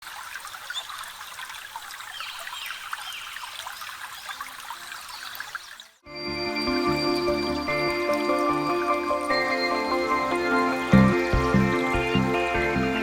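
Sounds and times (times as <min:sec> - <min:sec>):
water trickling: 0:00.0 - 0:06.0, 0:06.8 - 0:12.6
small birds chirping: 0:00.7 - 0:06.0
music: 0:06.1 - 0:13.0.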